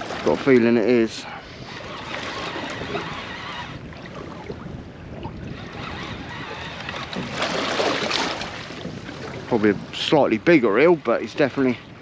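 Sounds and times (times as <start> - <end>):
water lapping against boat hull: 0.0 - 12.0
wind buffeting microphone: 0.0 - 12.0.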